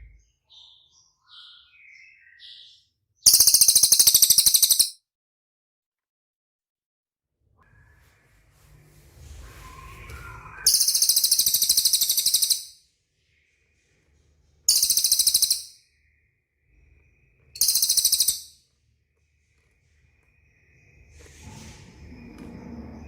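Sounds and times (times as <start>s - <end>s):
songbird high-pitched trills: 0.6s - 5.0s, 10.6s - 12.8s, 14.7s - 15.8s, 17.6s - 18.6s.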